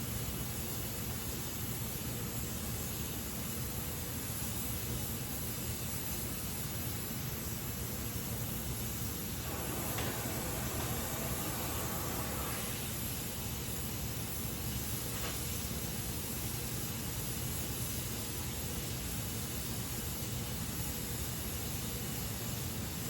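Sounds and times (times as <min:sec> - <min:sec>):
welding torch flame hissing: 0:07.4 - 0:20.3.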